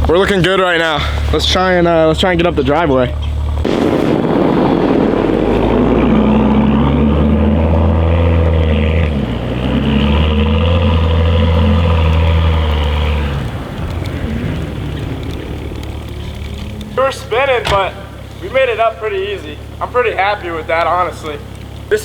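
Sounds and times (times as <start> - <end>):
car engine under load: 0.0 - 22.0
wheels spinning in snow: 1.1 - 22.0.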